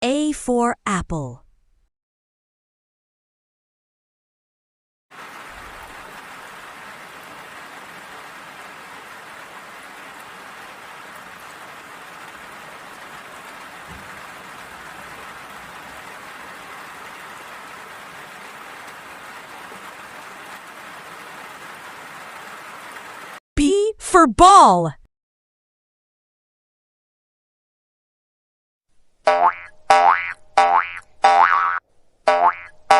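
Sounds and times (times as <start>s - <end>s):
rain falling: 5.1s - 23.4s
faint low thump: 13.9s - 14.2s.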